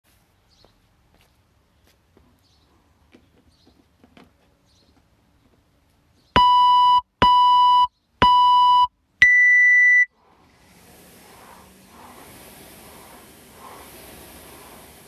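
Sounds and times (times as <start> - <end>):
higher-pitched timer beep: 6.4 - 10.1
timer beeps: 6.4 - 10.1.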